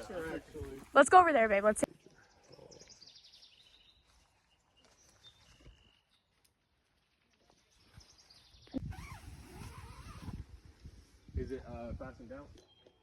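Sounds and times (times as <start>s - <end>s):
faint birds chirping: 1.6s - 8.9s.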